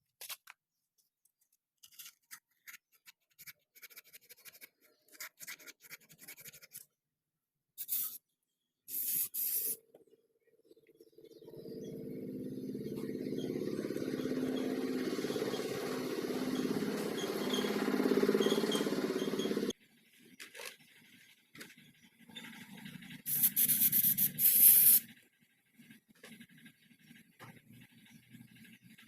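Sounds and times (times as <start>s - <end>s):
small electric motor running: 11.2s - 19.8s, 22.4s - 25.1s.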